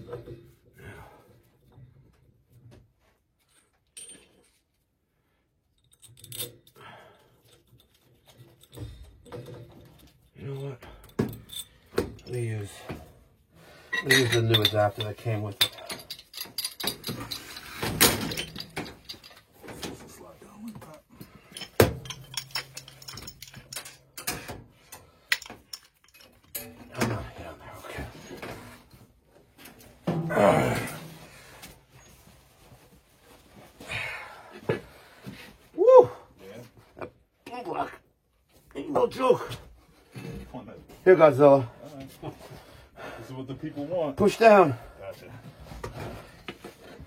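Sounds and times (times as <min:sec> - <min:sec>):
metal tools clinking and rattling: 0:03.6 - 0:04.6, 0:05.7 - 0:12.9, 0:13.8 - 0:31.2.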